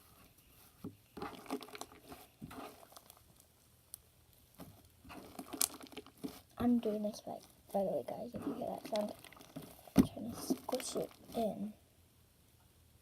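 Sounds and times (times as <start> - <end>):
slime squelching by hand: 1.1 - 3.6, 4.5 - 11.8.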